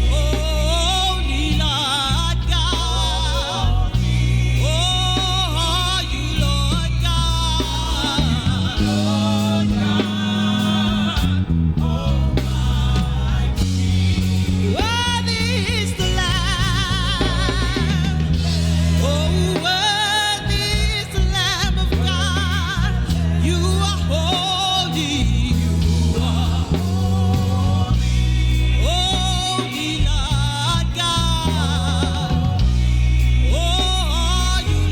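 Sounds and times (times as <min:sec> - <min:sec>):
band playing: 0:00.0 - 0:34.9
sustained bass chords: 0:00.0 - 0:34.9.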